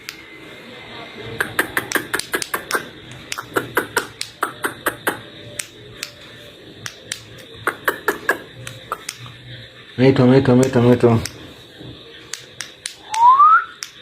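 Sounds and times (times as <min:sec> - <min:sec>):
rapid sharp clicking: 0:01.4 - 0:06.2, 0:06.8 - 0:09.4.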